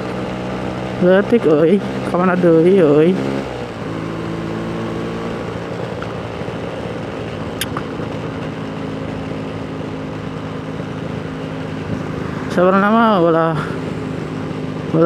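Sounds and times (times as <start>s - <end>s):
two-stroke motorcycle engine running: 0.0s - 15.0s.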